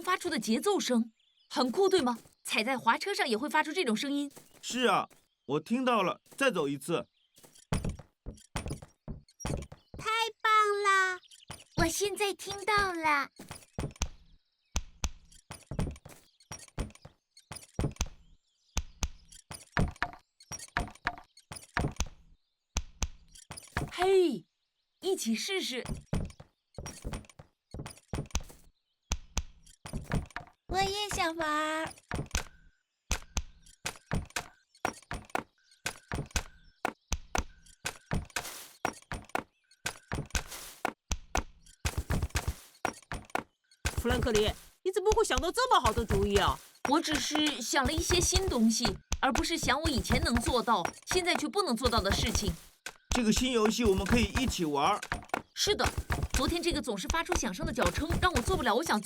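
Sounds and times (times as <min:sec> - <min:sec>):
objects knocked in a beat: 0:07.4 - 0:10.1, 0:11.4 - 0:14.2, 0:14.8 - 0:18.2, 0:18.8 - 0:22.2, 0:22.8 - 0:24.1, 0:25.8 - 0:59.0
foot brace clacking with steps: 0:07.4 - 0:10.2, 0:11.5 - 0:24.1, 0:25.8 - 0:59.0.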